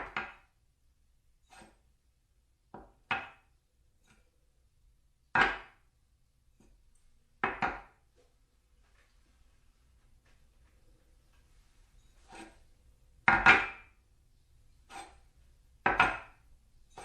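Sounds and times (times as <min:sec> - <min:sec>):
plates knocking on a table: 0:07.4 - 0:08.0, 0:13.3 - 0:13.9, 0:15.8 - 0:16.4.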